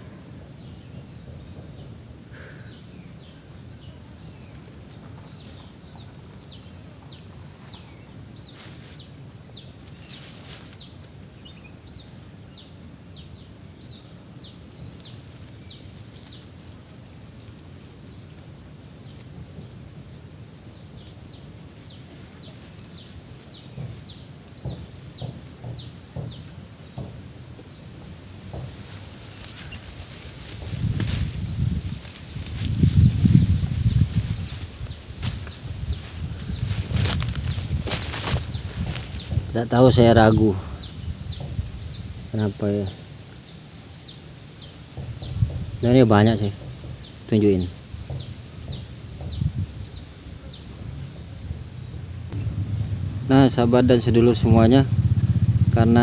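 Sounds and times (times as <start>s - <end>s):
low rustle: 28.4s - 43.2s
sharp crackles: 28.6s - 39.9s
bird falling chirps: 28.7s - 42.4s
high-pitched insect drone: 51.9s - 56.0s.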